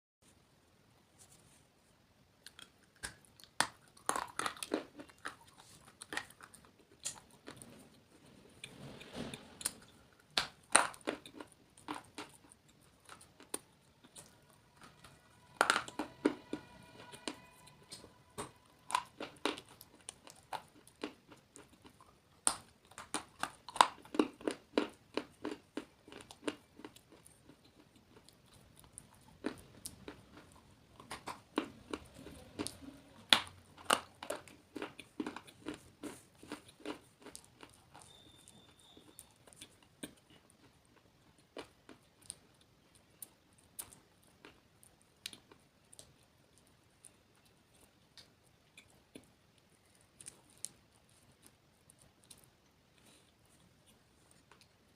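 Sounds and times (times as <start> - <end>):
chewing crunchy clay: 2.4 - 8.2, 9.7 - 17.5, 18.4 - 54.9.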